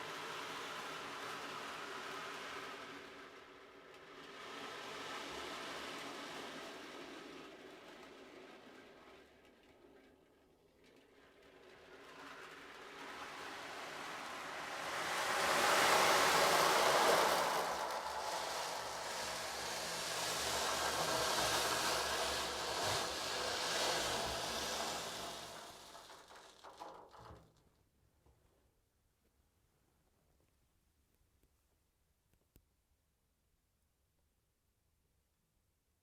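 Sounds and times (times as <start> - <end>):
surf-like wave wash: 14.1 - 25.6.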